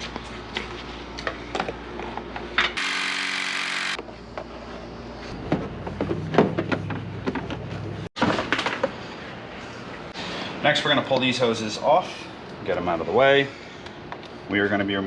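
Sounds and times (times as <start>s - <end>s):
small power tool whirring: 2.8s - 4.0s.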